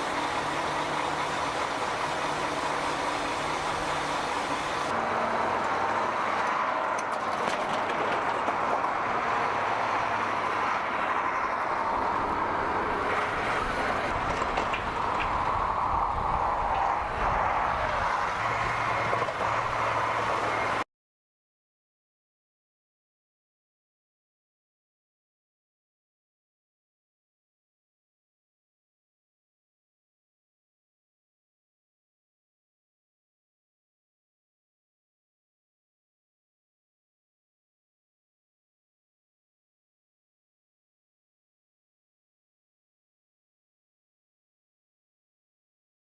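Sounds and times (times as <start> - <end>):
vehicle engine running: 0.0 - 20.8.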